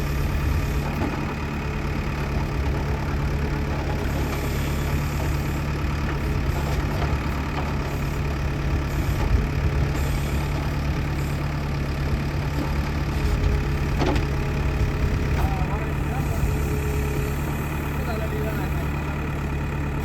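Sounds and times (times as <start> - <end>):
diesel engine idling: 0.0 - 20.0.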